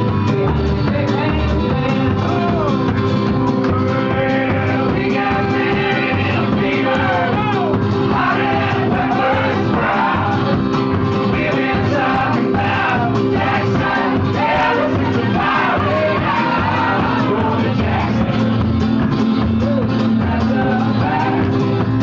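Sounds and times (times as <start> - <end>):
person singing: 0.0 - 2.9, 11.3 - 18.9, 19.5 - 22.0
live band playing: 0.0 - 22.0.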